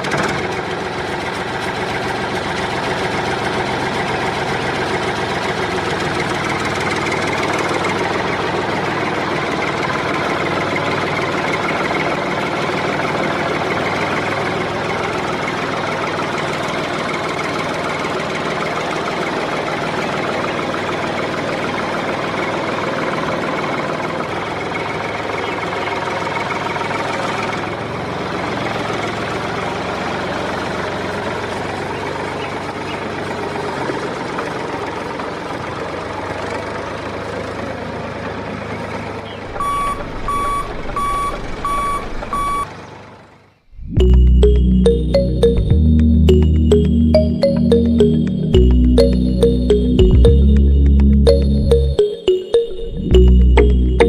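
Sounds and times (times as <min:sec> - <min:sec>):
engine running steadily: 0:00.0 - 0:40.2.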